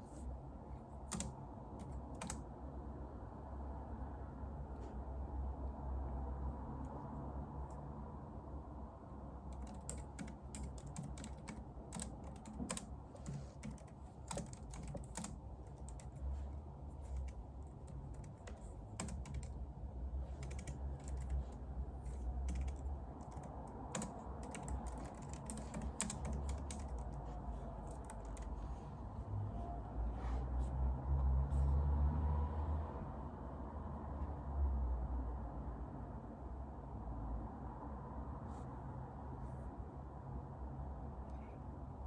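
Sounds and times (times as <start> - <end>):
low steady hum: 0.0 - 42.0
keyboard keystroke clicks: 1.1 - 2.4, 9.6 - 16.2, 22.5 - 27.1.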